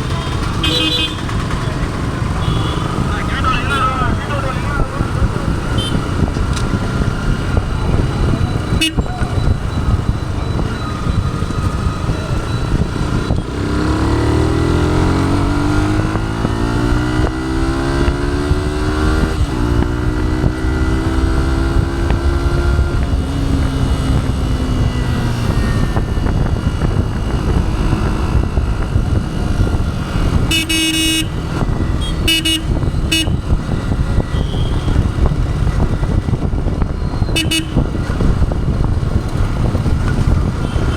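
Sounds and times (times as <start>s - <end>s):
motorcycle engine pulling under load: 0.0s - 2.8s
road and wind noise: 0.0s - 40.9s
vehicle horn: 0.4s - 1.5s, 2.3s - 4.2s, 5.7s - 6.1s, 8.7s - 9.2s, 30.5s - 33.5s, 34.3s - 35.0s, 37.3s - 38.0s, 40.6s - 40.9s.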